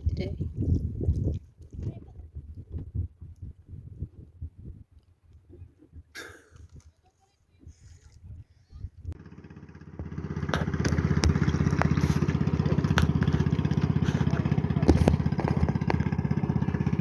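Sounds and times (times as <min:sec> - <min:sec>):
small engine puttering: 0:09.2 - 0:17.0.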